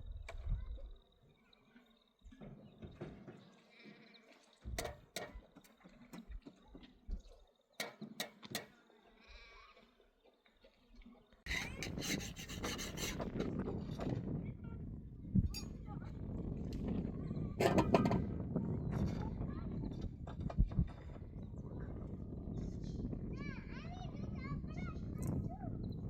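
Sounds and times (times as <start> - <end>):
rough scraping and clattering: 11.5 - 14.3, 17.6 - 18.4.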